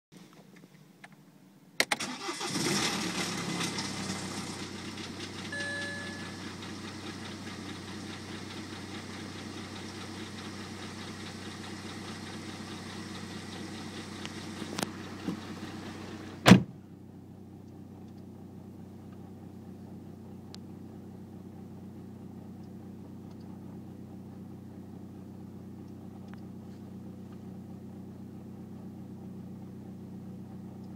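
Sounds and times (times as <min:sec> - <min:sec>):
diesel engine starting and idling: 0:01.8 - 0:30.9
loud thump: 0:16.4 - 0:16.8.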